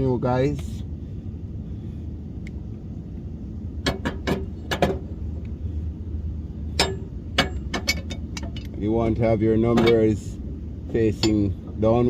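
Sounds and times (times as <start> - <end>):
low steady rumble: 0.0 - 12.0.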